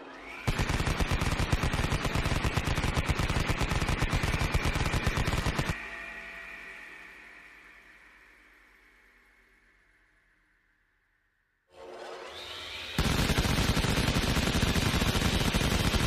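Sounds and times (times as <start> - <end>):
high whine of spinning barrels: 0.0 - 10.2, 11.8 - 16.0
rotary cannon firing: 0.4 - 5.8, 13.0 - 16.0.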